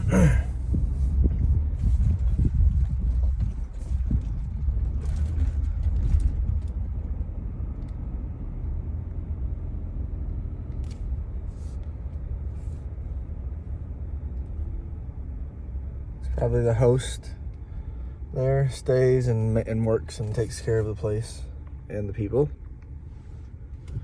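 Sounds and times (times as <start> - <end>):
car engine and tyre rumble: 0.0 - 24.0.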